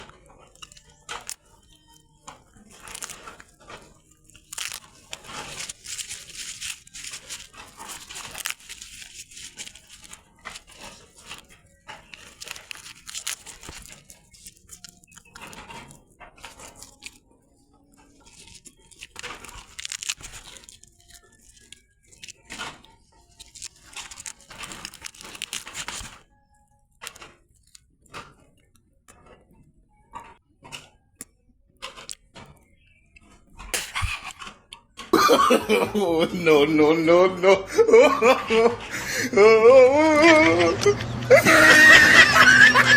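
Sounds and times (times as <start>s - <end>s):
leaves tearing and crunching: 0.4s - 17.2s, 17.9s - 26.2s, 38.2s - 42.9s.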